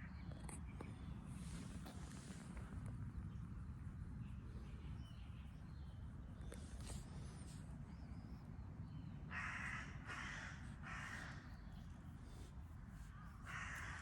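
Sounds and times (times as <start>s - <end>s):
crow cawing: 9.3s - 11.4s, 13.5s - 14.0s.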